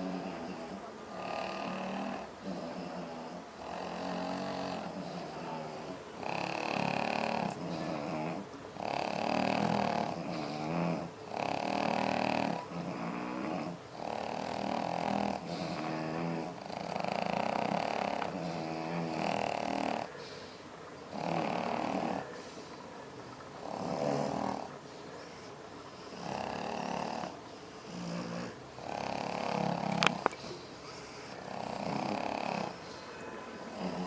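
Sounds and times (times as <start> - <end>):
pets snoring: 0.0 - 34.0
low breathing: 15.4 - 17.6, 19.6 - 23.1, 24.2 - 34.0.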